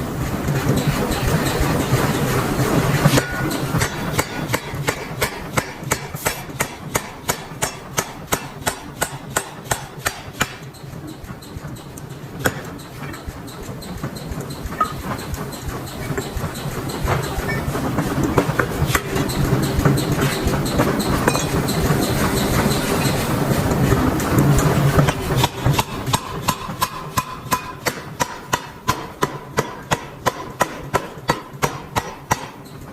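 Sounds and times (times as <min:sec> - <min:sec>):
sharp metallic impacts: 0:03.1 - 0:06.7.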